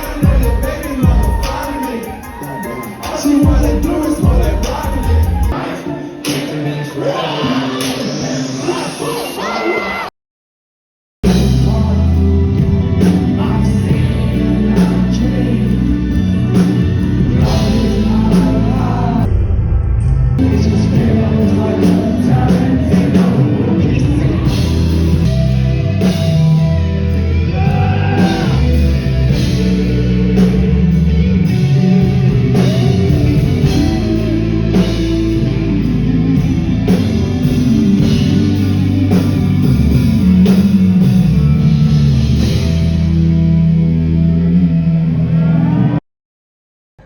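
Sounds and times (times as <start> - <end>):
rock drum beat: 0.0 - 5.6, 11.2 - 19.0, 20.4 - 43.3
guitar: 0.0 - 10.1, 11.2 - 46.0
person singing: 0.0 - 10.1, 11.3 - 19.3, 20.4 - 41.8.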